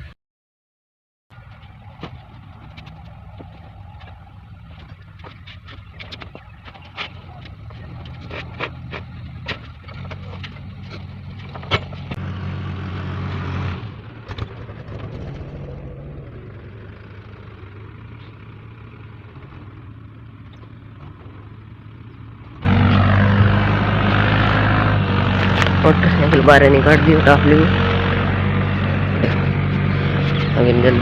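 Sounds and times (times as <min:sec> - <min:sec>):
vehicle engine idling: 0:01.3 - 0:31.0
loud steady sound: 0:22.6 - 0:29.0.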